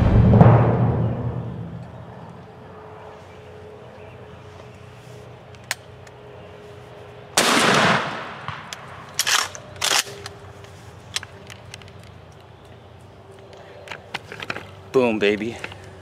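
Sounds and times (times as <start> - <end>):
shotgun blast with echo: 7.4 - 8.7.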